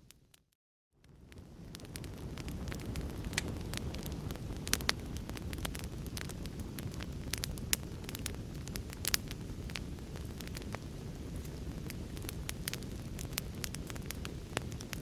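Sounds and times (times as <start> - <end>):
wood fire crackling and popping: 0.1 - 15.0
low rumble of flames: 1.0 - 15.0.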